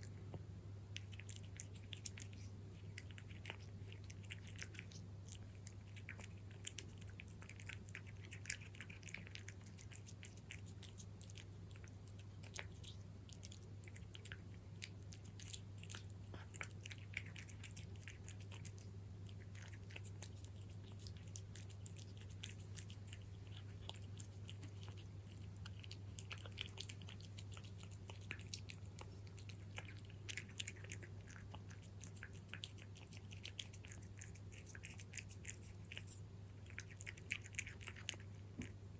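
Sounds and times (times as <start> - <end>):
steady low hum: 0.0 - 38.9
cat crunching dry kibble: 1.0 - 38.9.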